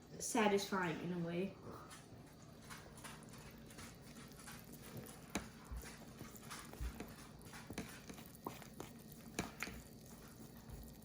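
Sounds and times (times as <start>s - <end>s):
dough squishing: 2.3s - 11.0s
whisk knocking on bowl: 3.2s - 11.0s.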